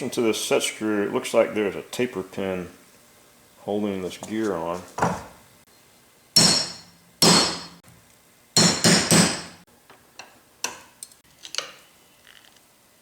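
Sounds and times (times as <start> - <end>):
hammer striking metal: 6.4 - 7.8, 8.6 - 9.6.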